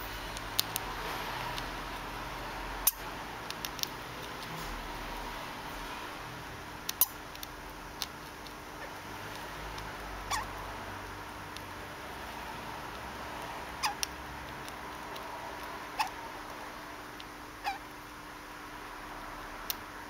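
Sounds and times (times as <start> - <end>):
rodent hiccuping: 6.9 - 7.2, 10.2 - 10.6, 13.7 - 14.1, 15.1 - 16.3, 17.6 - 18.0.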